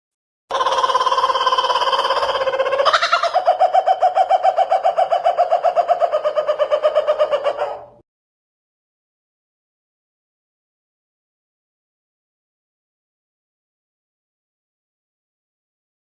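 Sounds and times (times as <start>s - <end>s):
bird-like call with trill: 0.5s - 8.0s.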